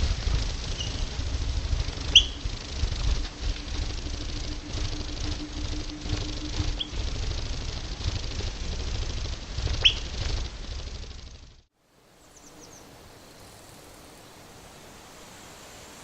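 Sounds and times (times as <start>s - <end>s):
wind buffeting microphone: 0.0s - 11.4s
sharp bird chirps: 0.6s - 1.2s, 2.0s - 7.6s, 9.7s - 10.3s
outdoor hiss: 11.7s - 16.0s.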